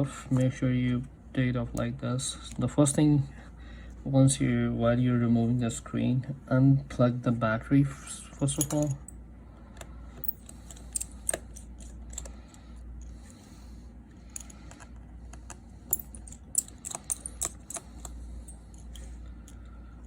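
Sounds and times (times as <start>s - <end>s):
faint low hum: 0.0s - 20.0s
small tools clicking and tapping: 14.4s - 19.6s.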